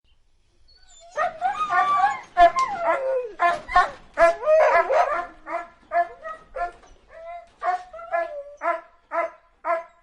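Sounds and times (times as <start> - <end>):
dog barking: 7.6 - 10.0.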